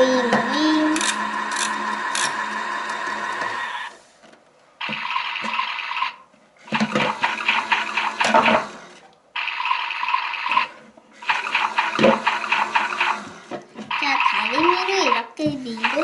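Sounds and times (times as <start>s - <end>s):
electronic water sound effect: 7.0s - 8.3s, 9.4s - 13.2s.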